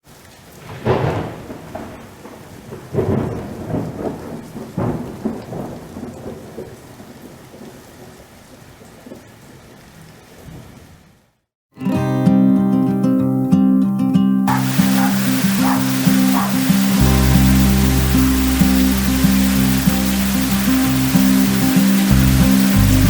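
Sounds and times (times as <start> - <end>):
rain and hail falling: 0.0 - 11.0, 14.5 - 23.0
thunder rumbling: 0.6 - 6.8, 14.5 - 23.0.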